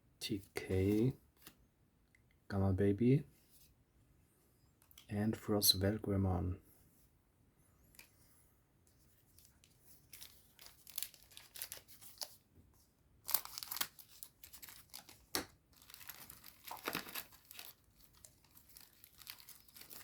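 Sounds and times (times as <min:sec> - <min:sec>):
wrapper tearing and crinkling: 0:10.1 - 0:12.4, 0:13.2 - 0:20.0.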